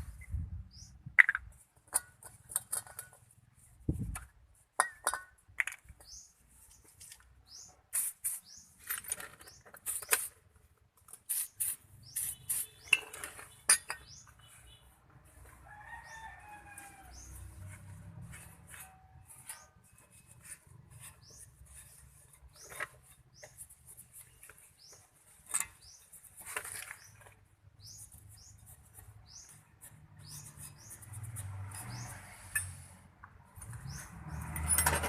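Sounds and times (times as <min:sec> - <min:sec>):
metal tools clinking: 0:01.2 - 0:03.3, 0:04.8 - 0:06.2, 0:08.8 - 0:10.4, 0:11.3 - 0:14.6, 0:31.3 - 0:32.9, 0:33.6 - 0:35.0
birds chirping: 0:06.0 - 0:10.3, 0:11.4 - 0:15.0.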